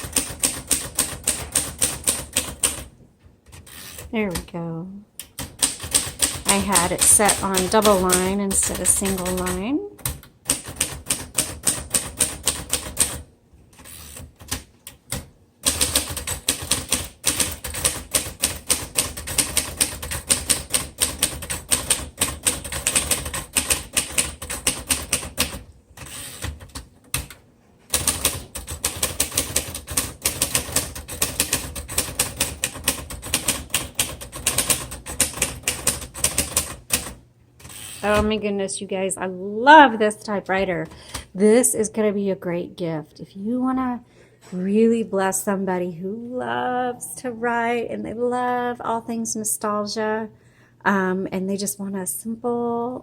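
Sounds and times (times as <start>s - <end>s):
manual typewriter typing: 0.0s - 4.5s, 5.2s - 38.3s.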